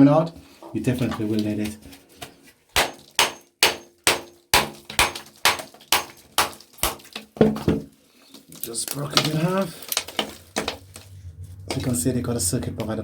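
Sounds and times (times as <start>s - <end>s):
hammer striking plastic casing: 2.8s - 7.9s.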